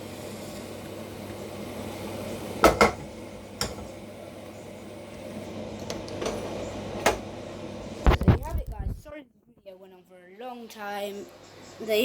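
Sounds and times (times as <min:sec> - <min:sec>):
spatula knocking frying pan: 0:02.6 - 0:03.9.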